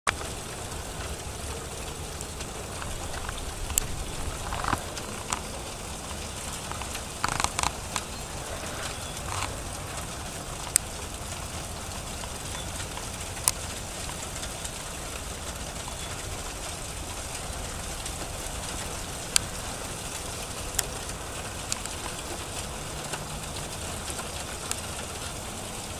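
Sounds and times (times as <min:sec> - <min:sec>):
hail pattering: 0:00.1 - 0:25.9
hailstones clicking on hard surfaces: 0:00.1 - 0:25.9.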